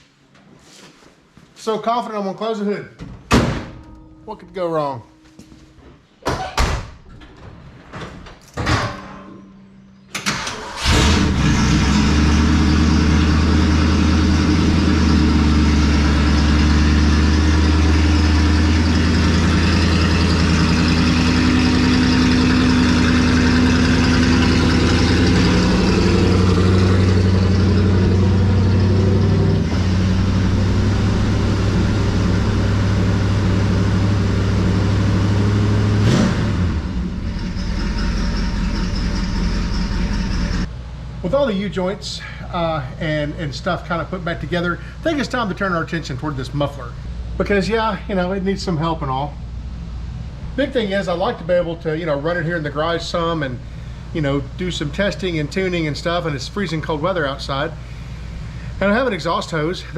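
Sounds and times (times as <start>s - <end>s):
truck engine running: 10.3s - 40.8s.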